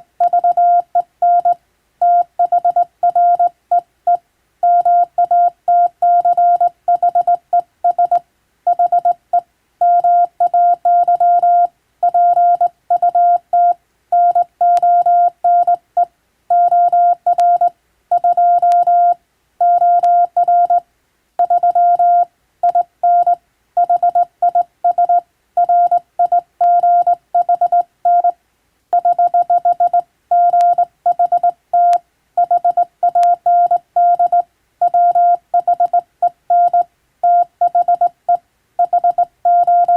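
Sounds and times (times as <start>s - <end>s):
morse code beeps: 0.2s - 9.2s, 9.8s - 20.8s, 21.4s - 28.3s, 29.0s - 39.9s.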